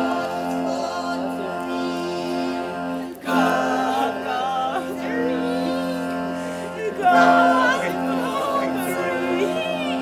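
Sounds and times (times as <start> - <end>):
person singing wavering melody: 0.0 - 10.0
sustained accompaniment notes: 0.0 - 10.0.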